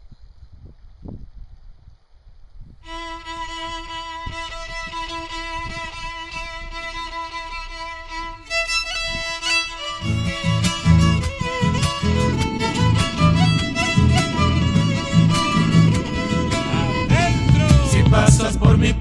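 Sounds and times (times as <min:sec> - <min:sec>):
violin melody: 0:02.8 - 0:18.3
low accompaniment with steady beat: 0:02.9 - 0:19.0.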